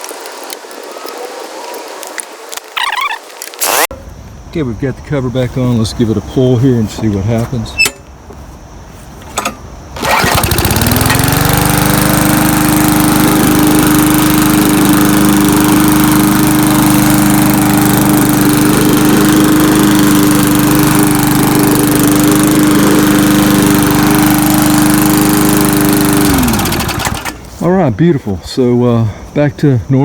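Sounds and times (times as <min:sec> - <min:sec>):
lawn mower engine running: 0:06.6 - 0:27.9
starter cord pull: 0:09.4 - 0:11.6, 0:26.3 - 0:27.4.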